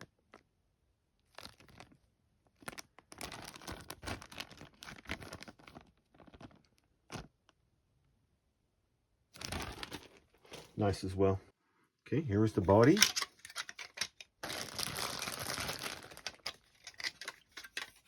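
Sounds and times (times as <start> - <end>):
plastic bags crinkling: 1.3 - 2.0, 2.6 - 7.3, 9.4 - 10.8, 12.6 - 18.0.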